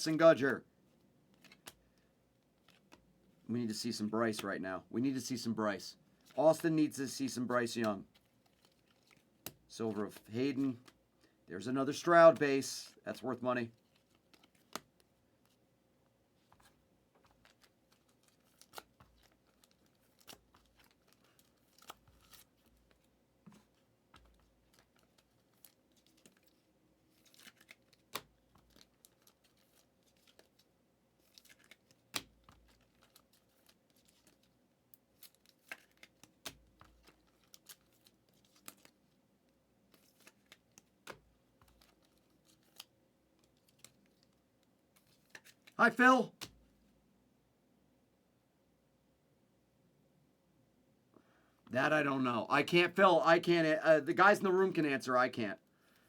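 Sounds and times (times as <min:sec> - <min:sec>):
cards and wrappers rustling: 0:00.4 - 0:04.5, 0:06.1 - 0:15.6, 0:16.4 - 0:39.2, 0:39.9 - 0:46.8.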